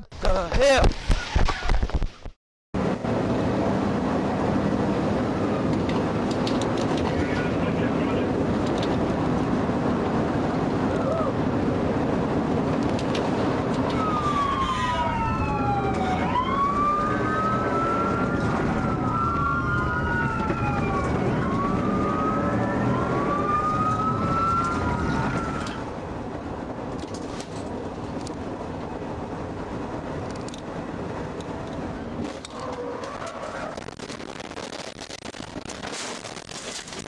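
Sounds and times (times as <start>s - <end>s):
road and engine noise: 0.0s - 37.0s
police siren wailing: 13.7s - 25.9s.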